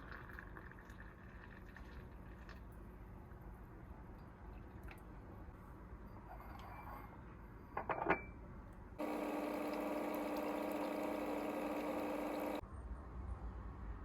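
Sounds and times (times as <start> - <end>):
small electric motor humming: 9.0 - 12.6.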